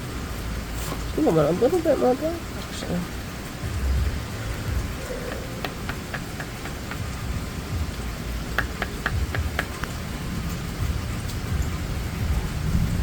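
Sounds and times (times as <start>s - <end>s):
steady rain hiss: 0.0s - 13.0s
low rumble: 3.1s - 8.6s, 9.2s - 13.0s
light sharp taps: 8.6s - 9.9s.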